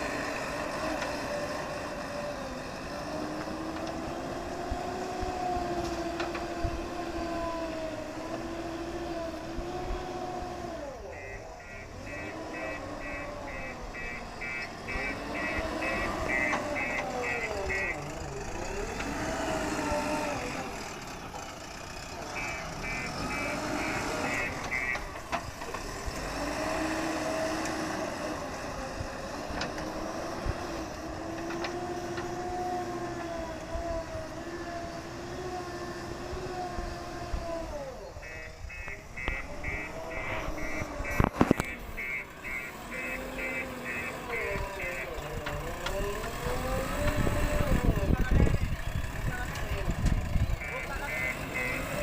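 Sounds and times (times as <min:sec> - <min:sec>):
diesel engine revving: 0:00.0 - 0:52.0
reversing alarm beeping: 0:11.1 - 0:18.0, 0:22.3 - 0:25.0, 0:38.2 - 0:45.2, 0:50.5 - 0:52.0.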